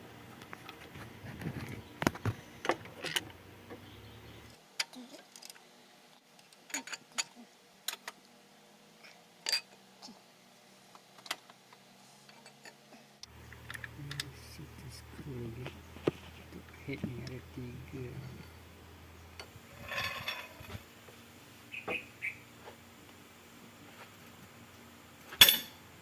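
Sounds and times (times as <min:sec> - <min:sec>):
metal tools clinking on engine: 0:25.3 - 0:25.8.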